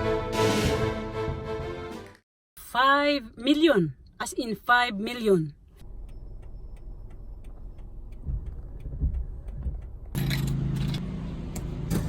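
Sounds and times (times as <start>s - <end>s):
low background rumble: 5.6s - 11.9s
vehicle engine humming: 5.6s - 12.0s.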